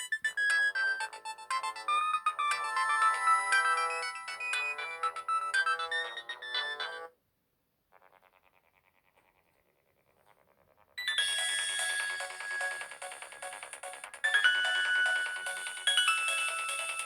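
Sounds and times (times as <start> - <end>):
synthesized ringtone melody: 0.0 - 7.1, 11.0 - 17.0.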